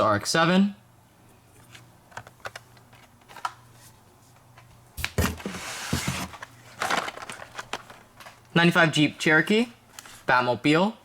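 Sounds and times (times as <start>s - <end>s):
crinkly packaging rustling: 5.0s - 10.3s.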